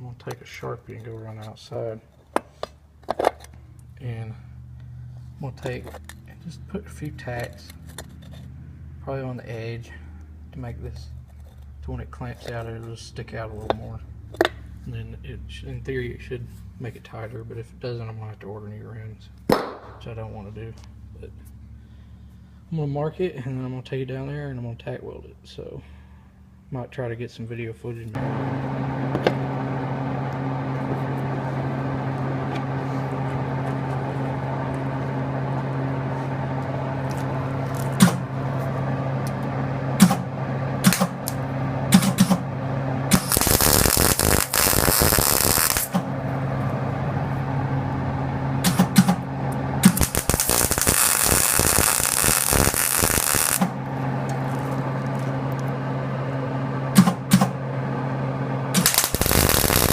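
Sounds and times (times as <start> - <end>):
low electrical hum: 0.0 - 59.9
crackling welding arc: 43.1 - 46.0, 49.8 - 53.7, 58.8 - 59.9.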